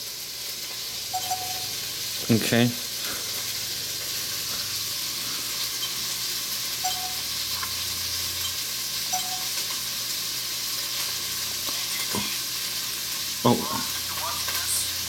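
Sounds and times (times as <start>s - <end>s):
steady hiss: 0.0s - 15.0s
short faint beeps: 1.1s - 1.8s, 6.8s - 7.3s, 8.4s - 9.6s.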